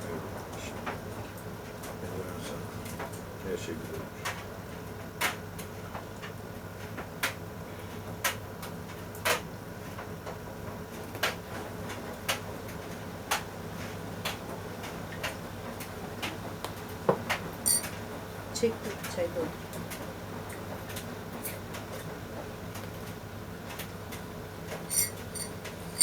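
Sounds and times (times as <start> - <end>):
low steady hum: 17.7 - 18.0, 24.8 - 26.0.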